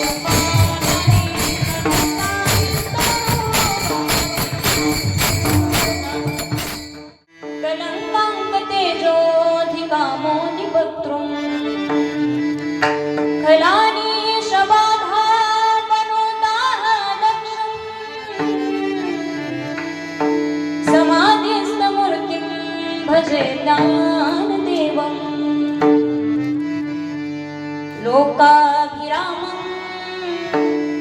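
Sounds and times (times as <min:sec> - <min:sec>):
person singing wordless melody: 0:00.0 - 0:06.6
tabla: 0:00.0 - 0:31.0.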